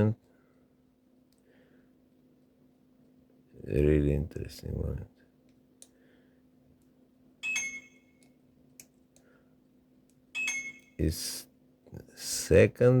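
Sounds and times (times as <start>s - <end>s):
lock picks clinking: 7.4s - 8.0s, 10.4s - 11.0s.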